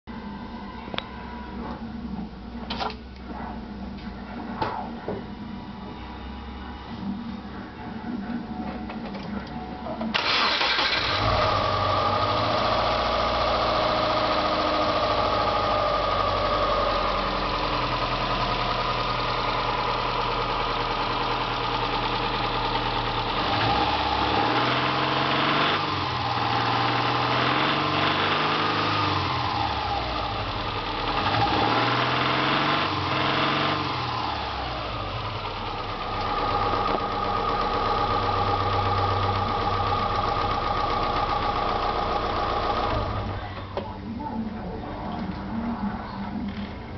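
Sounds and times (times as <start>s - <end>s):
car engine starting: 6.9s - 44.4s
car engine idling with a rattle: 8.6s - 44.5s
car engine revving: 10.2s - 43.6s.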